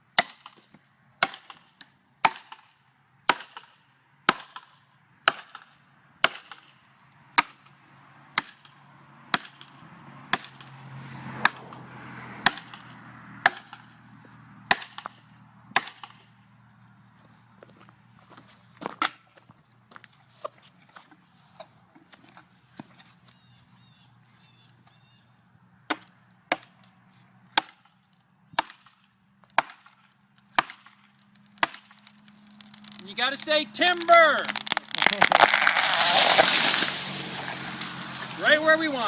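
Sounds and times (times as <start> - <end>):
axe blows into tree: 34.2 - 38.4.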